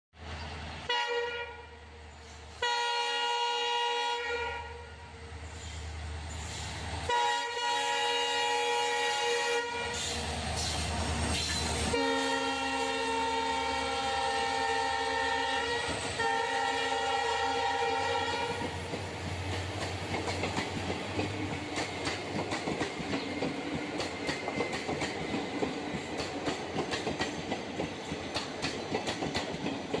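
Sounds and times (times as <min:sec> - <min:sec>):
train horn blasts: 0:00.9 - 0:02.0, 0:02.6 - 0:05.3, 0:07.1 - 0:10.2, 0:11.8 - 0:18.7
train wheels clattering on rails: 0:09.9 - 0:11.8, 0:18.1 - 0:30.0.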